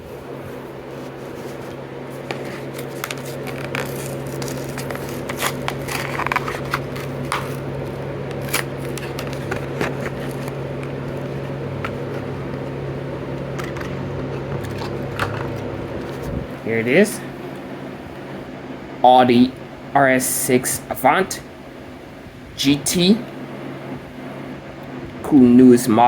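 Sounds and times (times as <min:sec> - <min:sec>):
steady low hum: 0:00.0 - 0:26.0
plastic packaging crackling: 0:00.6 - 0:16.4.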